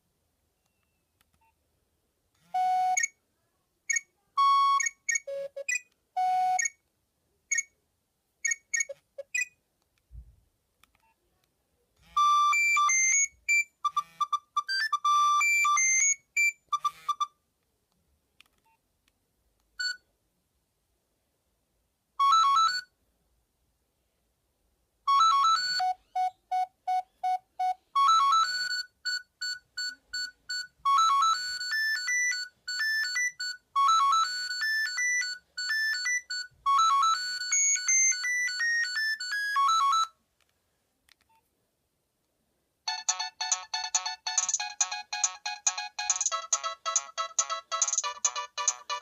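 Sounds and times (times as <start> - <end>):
electronic ringtone melody: 2.6 - 3.1, 4.4 - 6.8, 12.2 - 17.3, 22.2 - 22.9, 25.1 - 40.1, 42.9 - 49.0.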